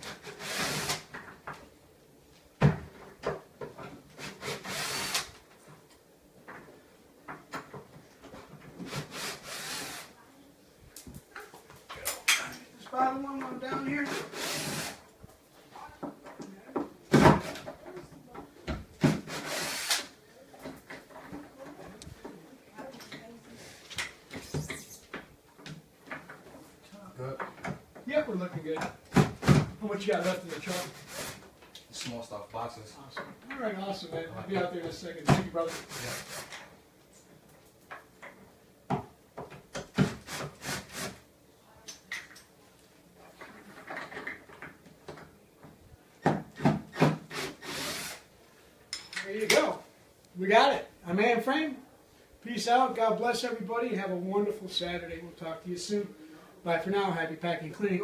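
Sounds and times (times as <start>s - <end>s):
scrapes of wood and metal: 30.1s - 31.6s.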